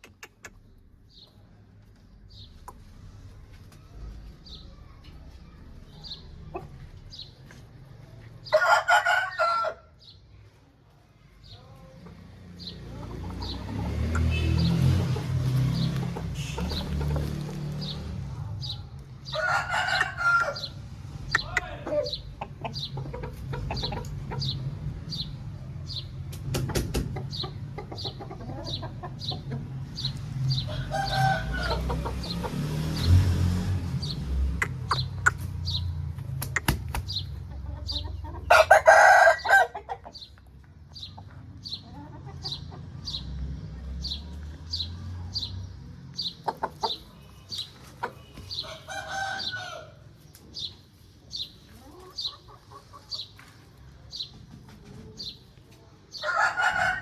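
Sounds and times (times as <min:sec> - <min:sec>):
roosters crowing: 0:08.4 - 0:10.0, 0:13.0 - 0:22.2, 0:30.4 - 0:34.3, 0:37.9 - 0:40.0, 0:47.9 - 0:50.2, 0:56.1 - 0:57.0.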